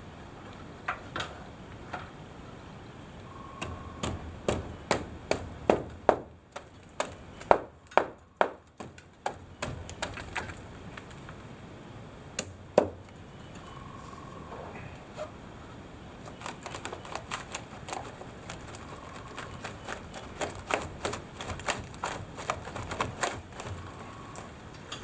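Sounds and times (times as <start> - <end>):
sharp knocks on timber: 3.6 - 10.3, 12.4 - 13.0.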